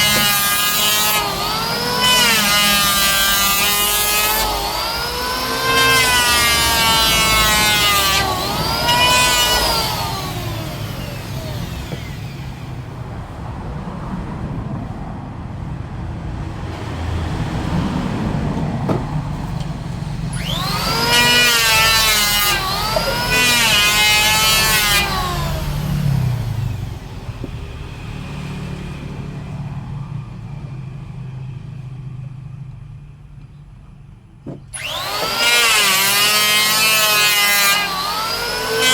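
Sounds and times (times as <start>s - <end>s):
power tool cutting wood: 0.0s - 12.9s, 20.3s - 27.7s, 34.7s - 38.9s.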